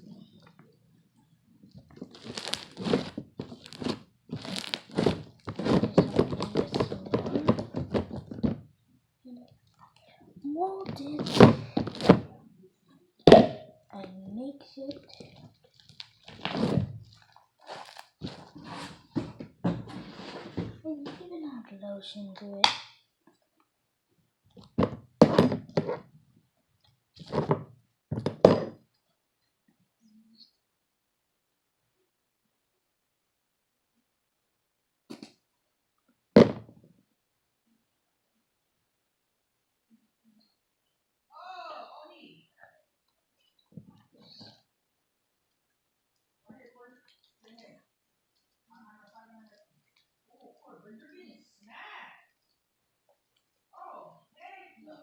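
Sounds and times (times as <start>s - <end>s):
slime squelching: 1.6s - 8.6s, 9.5s - 12.4s, 13.2s - 19.4s, 45.5s - 51.6s
slime thunking and knocking: 1.9s - 8.7s, 10.8s - 12.3s, 13.3s - 13.7s, 15.2s - 17.2s, 24.6s - 26.0s, 27.2s - 28.8s, 36.4s - 36.8s.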